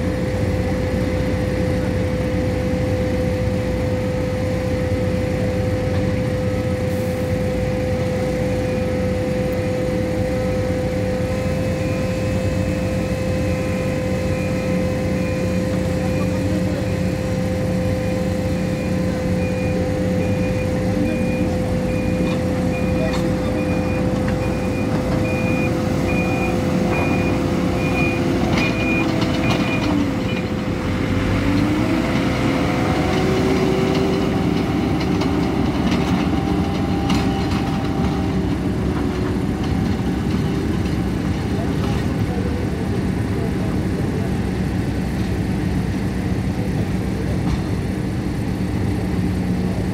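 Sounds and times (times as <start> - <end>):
diesel engine running: 0.0 - 49.9
reversing alarm beeping: 7.3 - 38.5.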